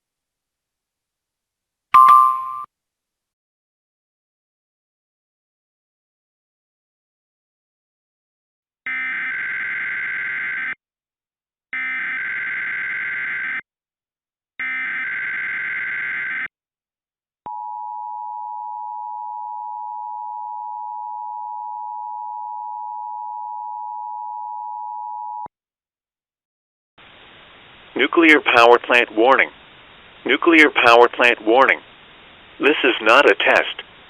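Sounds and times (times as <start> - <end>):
steady attention tone: 2.0 - 2.7.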